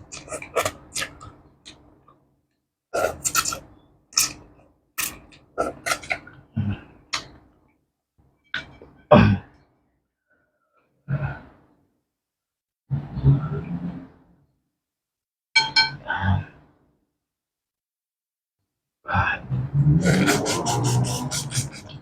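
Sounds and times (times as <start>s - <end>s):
person slurping soup: 19.8s - 22.0s
mouth smacks: 20.0s - 22.0s.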